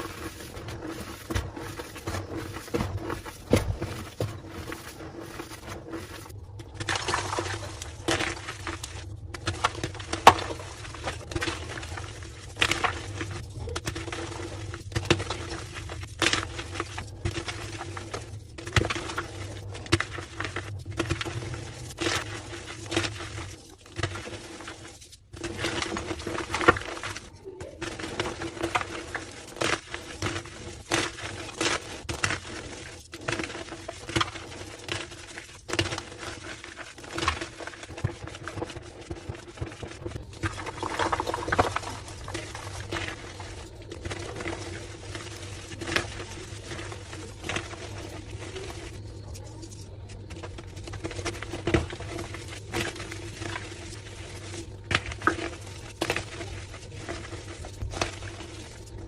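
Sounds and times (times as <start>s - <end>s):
chalk crushing and crackling: 0.0s - 59.0s.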